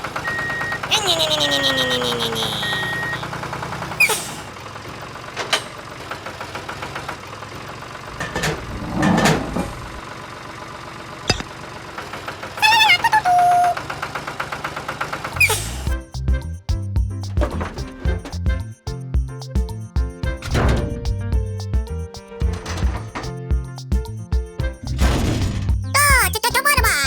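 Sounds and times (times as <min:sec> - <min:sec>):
small engine running: 0:00.0 - 0:15.9
wavering squeal: 0:01.0 - 0:03.3
short knocks and squeaks: 0:03.9 - 0:04.5, 0:11.3 - 0:11.5, 0:15.4 - 0:15.9, 0:22.4 - 0:23.4.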